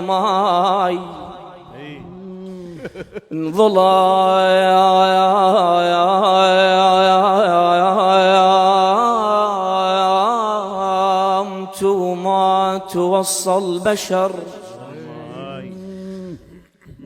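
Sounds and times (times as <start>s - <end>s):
man singing unaccompanied lament: 0.0s - 17.0s.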